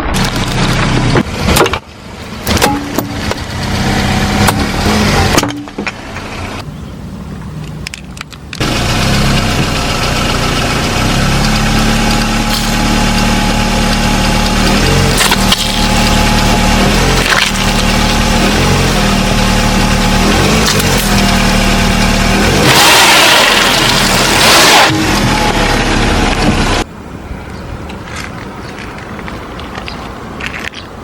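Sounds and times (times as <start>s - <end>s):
tires rolling over objects: 0.0s - 6.6s, 7.8s - 31.0s
car engine running slowly: 7.8s - 30.9s
crunching burst: 14.8s - 18.8s, 22.5s - 26.8s.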